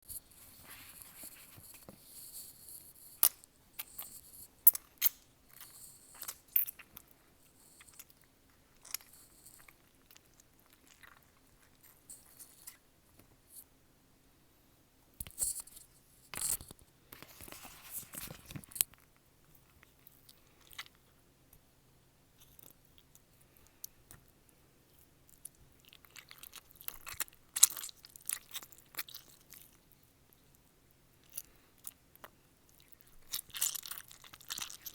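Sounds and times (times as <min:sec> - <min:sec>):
wet squishy chewing and crunching: 0:03.8 - 0:12.8, 0:24.9 - 0:34.9.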